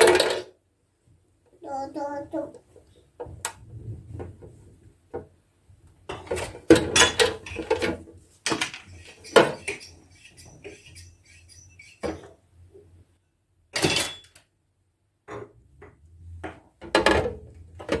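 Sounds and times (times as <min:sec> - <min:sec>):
dishes clinking and clattering: 0:06.1 - 0:12.4, 0:13.8 - 0:14.4.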